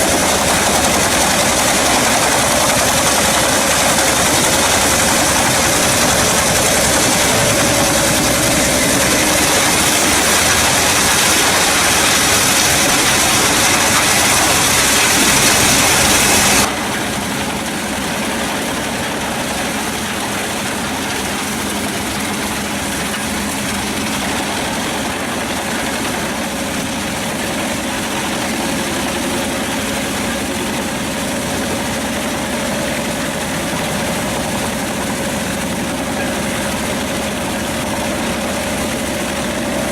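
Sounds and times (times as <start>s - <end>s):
loud hiss: 0.0s - 16.7s
wood chipper running: 0.0s - 39.9s.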